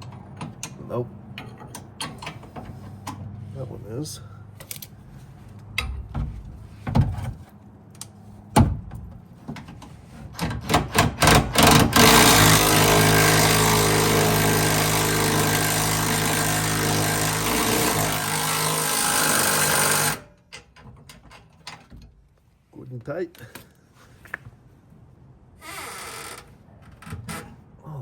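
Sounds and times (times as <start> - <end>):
impact wrench: 10.8 - 20.2.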